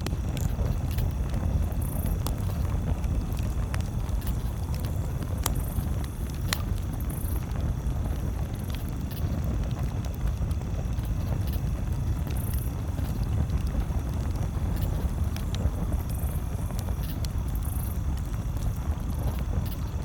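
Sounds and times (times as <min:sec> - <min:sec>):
campfire crackling: 0:00.0 - 0:20.0
low rumble: 0:00.0 - 0:20.0.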